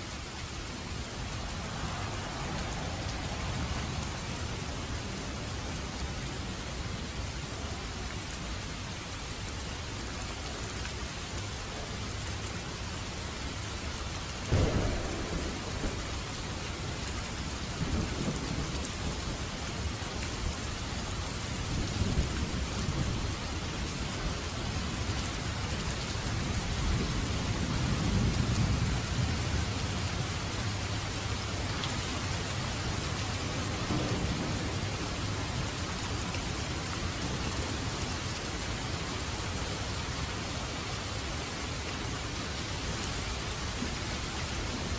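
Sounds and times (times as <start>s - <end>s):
heavy rain: 0.0s - 44.9s
rolling thunder rumbles: 0.6s - 6.2s, 14.4s - 40.7s
sharp thunderclap: 14.5s - 19.4s.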